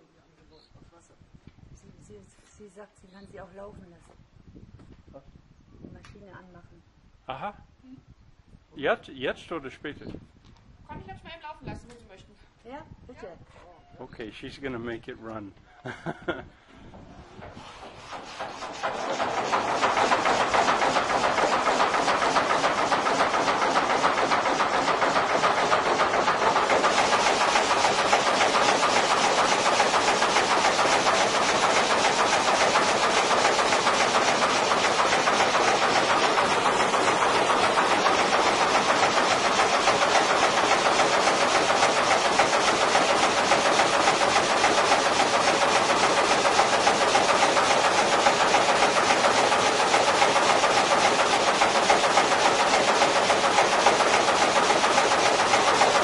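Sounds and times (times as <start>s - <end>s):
sawmill machinery clattering: 17.4s - 56.0s.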